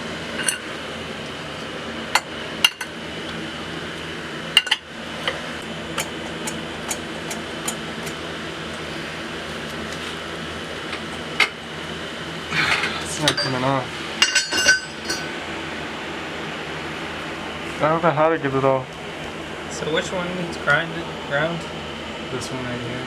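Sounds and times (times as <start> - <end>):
steady background hum: 0.0 - 23.0
metal tools clinking on metal: 12.7 - 15.3.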